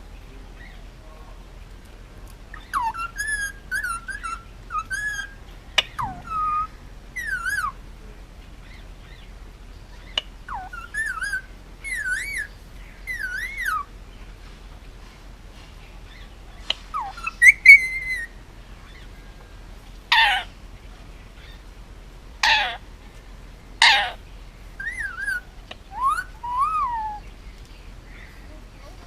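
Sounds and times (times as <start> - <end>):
parakeet whistling: 2.6 - 7.8, 9.9 - 13.9, 16.9 - 19.0, 24.8 - 27.2.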